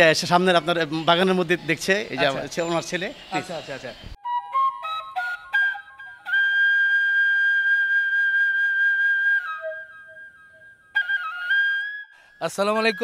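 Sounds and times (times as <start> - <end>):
flute music: 4.2 - 13.0.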